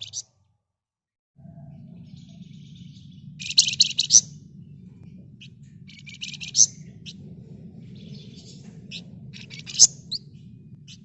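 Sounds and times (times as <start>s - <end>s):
steady low hum: 1.4s - 11.0s
songbird rattling chatter: 2.3s - 11.0s.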